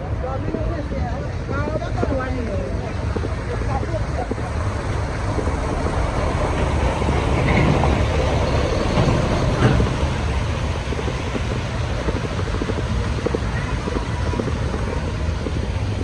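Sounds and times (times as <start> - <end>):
vehicle passing on wet road: 0.0 - 16.0
wind rumble on microphone: 0.0 - 16.0.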